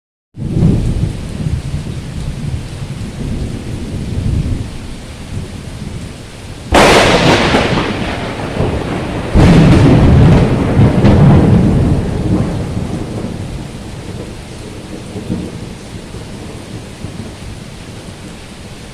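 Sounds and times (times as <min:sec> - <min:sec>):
thunder claps rumbling: 0:00.4 - 0:18.4
heavy rain: 0:00.4 - 0:18.9.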